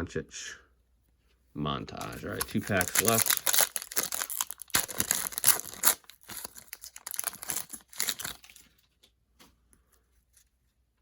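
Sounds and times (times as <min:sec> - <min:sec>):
wrapper tearing and crinkling: 0:02.0 - 0:08.7.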